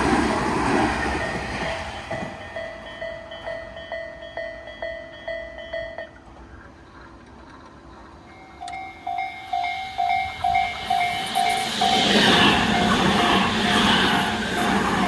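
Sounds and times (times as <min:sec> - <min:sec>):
approaching train noise: 0:00.0 - 0:15.0
higher pitched crossing bell: 0:00.8 - 0:06.4, 0:08.2 - 0:15.0
level crossing alarm ringing: 0:08.3 - 0:15.0.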